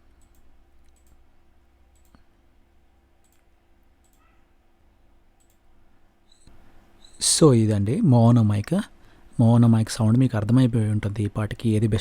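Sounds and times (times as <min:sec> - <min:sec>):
faint steady hum: 0:00.0 - 0:12.0
computer mouse clicks: 0:00.2 - 0:01.2, 0:01.9 - 0:02.3, 0:03.2 - 0:04.3, 0:05.4 - 0:05.7.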